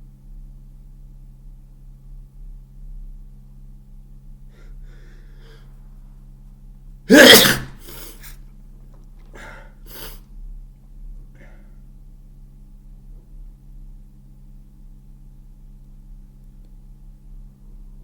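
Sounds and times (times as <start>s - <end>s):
short breaths: 4.5s - 5.7s, 9.4s - 10.2s
faint breathy inhales: 4.5s - 5.8s, 9.4s - 10.3s, 11.4s - 11.8s
loud wet sneeze: 7.1s - 8.4s, 9.9s - 10.2s.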